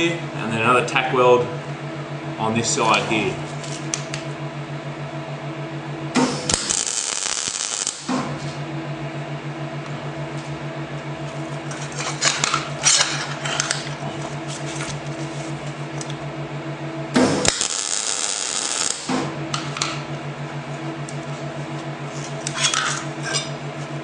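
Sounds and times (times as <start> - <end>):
welder pulsing hum: 0.0 - 24.0
welding arc crackle: 6.2 - 8.6, 17.2 - 20.0.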